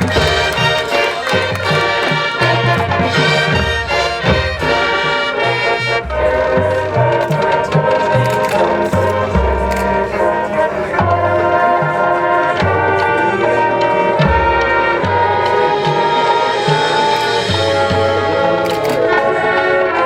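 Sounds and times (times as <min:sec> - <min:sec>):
brass chords: 0:00.0 - 0:20.0
drums keeping a steady beat: 0:00.0 - 0:20.0
marching band playing: 0:00.0 - 0:20.0.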